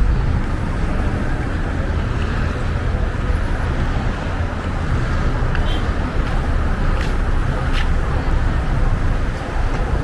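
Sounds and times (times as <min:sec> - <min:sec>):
road traffic rumble: 0:00.0 - 0:10.0.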